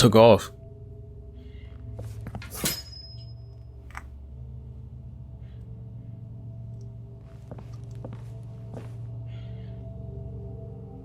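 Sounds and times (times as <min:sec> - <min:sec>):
ominous low drone: 0:03.2 - 0:11.0.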